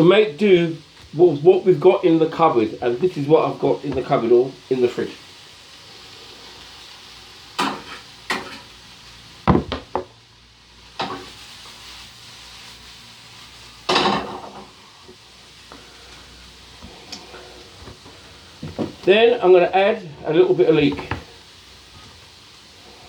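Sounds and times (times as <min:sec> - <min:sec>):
vegetables sizzling in frying pan: 0:00.0 - 0:23.0
kitchen utensils clattering: 0:13.9 - 0:14.7.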